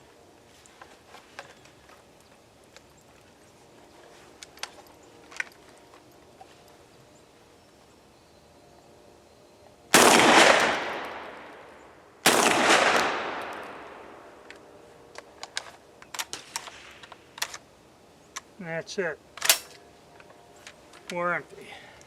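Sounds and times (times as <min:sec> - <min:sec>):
shotgun shots with echo: 0:10.0 - 0:11.5, 0:12.2 - 0:14.0.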